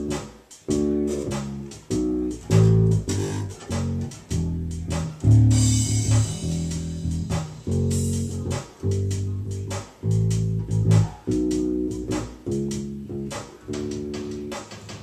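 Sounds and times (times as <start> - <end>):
electric bass notes plucked: 0.0 - 14.6.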